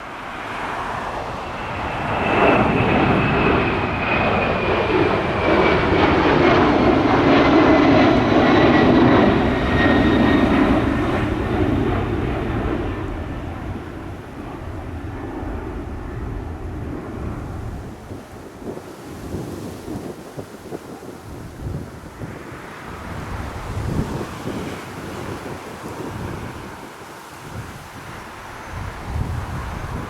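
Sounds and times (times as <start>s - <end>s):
jet engine whine: 0.0s - 30.0s
jet plane passing: 0.0s - 30.0s.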